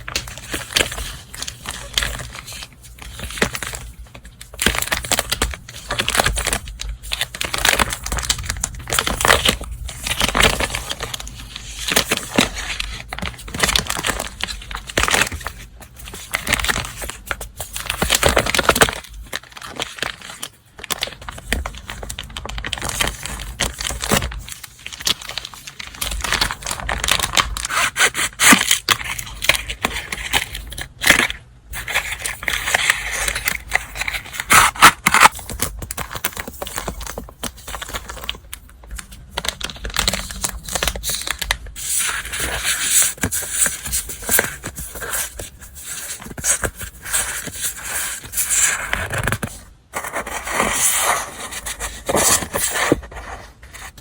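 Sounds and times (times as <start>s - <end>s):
paper crinkling and rustling: 0.0s - 54.0s.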